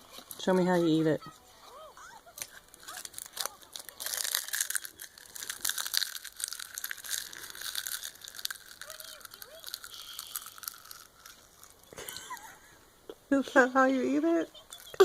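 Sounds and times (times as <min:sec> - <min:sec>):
seaweed snack crunching: 0:02.3 - 0:12.2.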